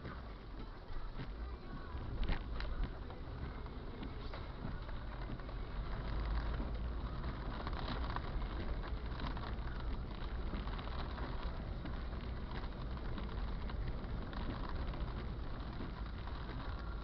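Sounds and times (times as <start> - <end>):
low rumble: 0.0 - 17.0
heavy rain falling: 1.3 - 17.0.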